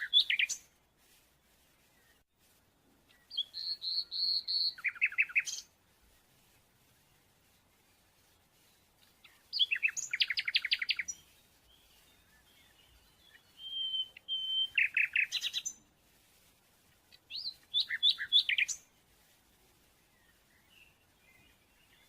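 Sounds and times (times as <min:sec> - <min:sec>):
whistled bird notes: 0:00.0 - 0:01.2, 0:03.1 - 0:05.7, 0:07.8 - 0:15.8, 0:17.2 - 0:18.9, 0:20.0 - 0:22.0
songbird chirping and trilling: 0:00.0 - 0:02.3, 0:03.0 - 0:22.0.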